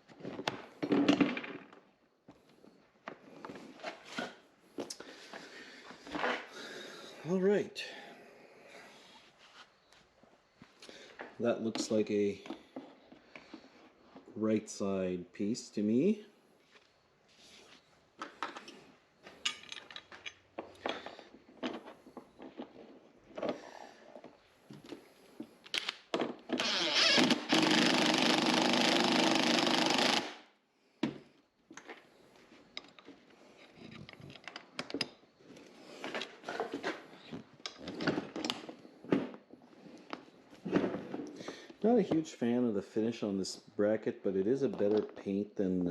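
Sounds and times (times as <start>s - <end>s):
parts clicking and knocking: 18.2s - 23.6s, 32.7s - 39.4s, 44.7s - 45.3s
power drill driving screw: 26.6s - 30.5s.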